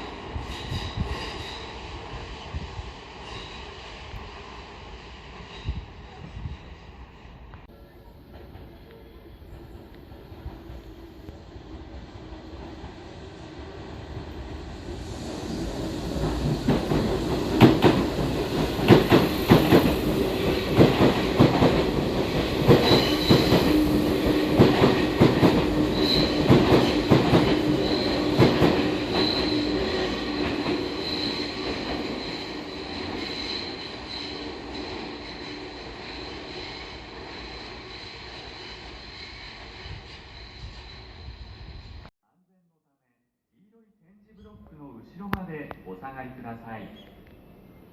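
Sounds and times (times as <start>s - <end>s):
train wheels clacking: 15.8s - 40.8s
high wheel squeal: 22.8s - 23.8s, 25.8s - 41.9s.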